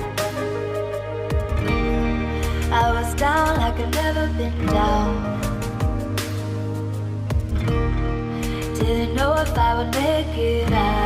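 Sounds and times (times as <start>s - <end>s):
pop song: 0.0s - 11.0s
person singing: 2.4s - 6.1s, 8.5s - 11.0s.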